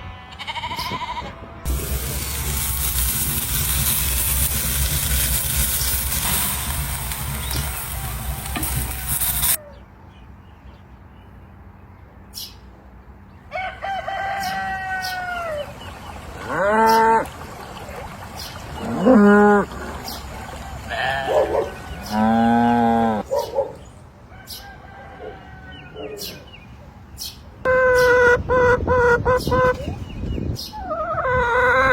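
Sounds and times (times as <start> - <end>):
farm animals calling: 0.0 - 1.6, 13.7 - 23.8, 27.2 - 31.9
vehicle noise: 0.4 - 31.9.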